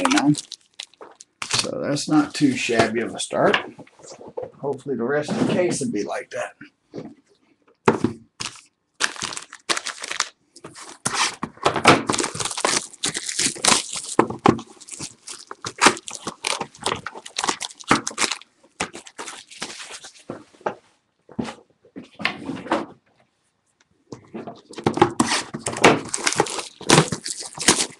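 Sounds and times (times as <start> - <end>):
wrappers and cardboard tearing: 0.0 - 1.8, 8.4 - 20.3, 24.6 - 27.9.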